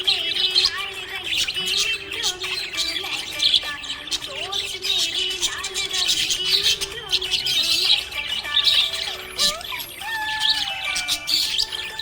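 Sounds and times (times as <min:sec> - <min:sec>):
budgerigars chirping: 0:00.0 - 0:12.0.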